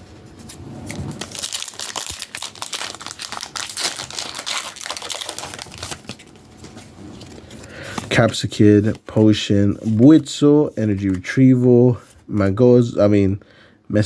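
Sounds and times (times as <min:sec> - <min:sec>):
foil wrapper crinkling: 0:00.9 - 0:07.5.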